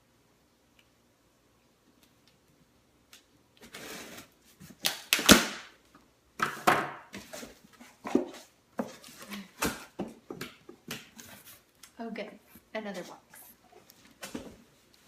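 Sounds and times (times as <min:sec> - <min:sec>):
sharp cardboard crack: 0:04.8 - 0:05.7.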